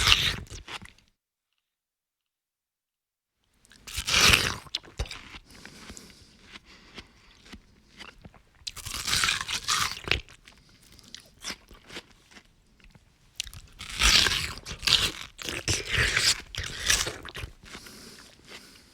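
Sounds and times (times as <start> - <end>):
person biting crunchy watermelon: 0.0 - 1.0, 3.7 - 18.9.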